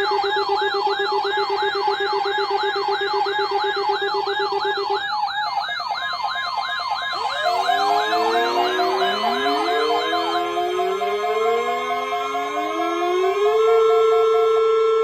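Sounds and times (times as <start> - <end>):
electronic siren sweeping: 0.0 - 15.0
siren tones winding upward: 0.0 - 15.0
pulsing tone: 7.1 - 13.7.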